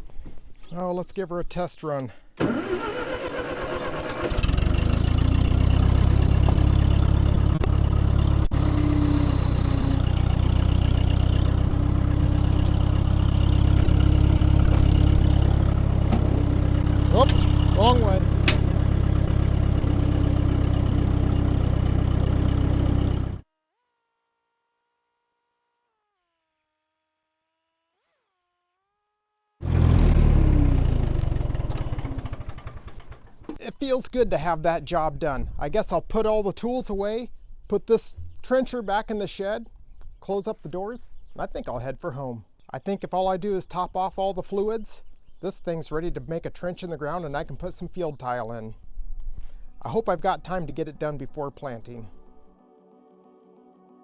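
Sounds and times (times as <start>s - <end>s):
trencher engine starting and running: 2.4s - 23.5s, 29.6s - 33.6s.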